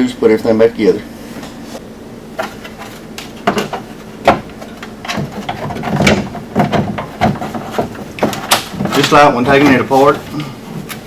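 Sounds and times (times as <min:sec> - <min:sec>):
parts knocking and clicking: 0:02.4 - 0:11.0.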